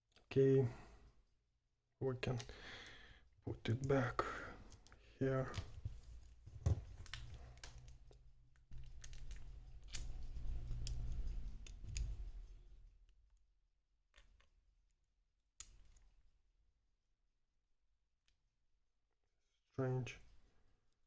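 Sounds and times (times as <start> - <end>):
small parts clicking and tapping: 6.6 - 13.4, 14.1 - 16.2.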